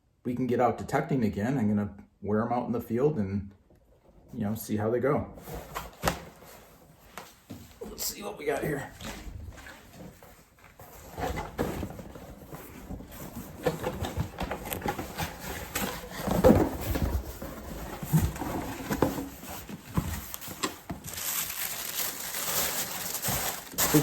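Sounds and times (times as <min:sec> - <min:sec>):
package being handled: 0:09.0 - 0:24.0
packaging crinkling: 0:17.3 - 0:24.0.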